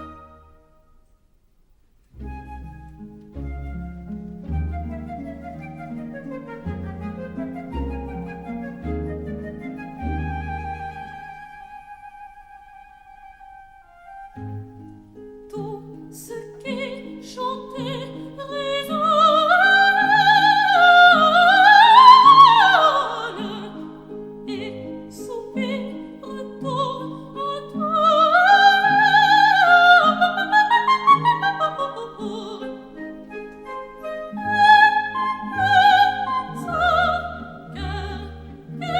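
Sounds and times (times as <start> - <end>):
operatic soprano singing: 0.0 - 0.5, 15.5 - 33.4, 34.1 - 38.9
piano accompaniment: 2.2 - 10.8.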